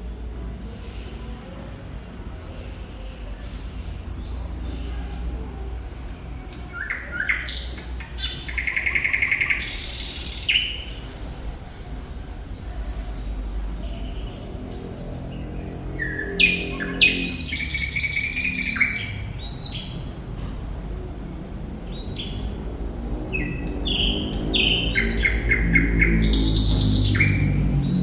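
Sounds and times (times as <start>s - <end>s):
nightingale singing: 13.8s - 20.0s, 21.9s - 28.0s.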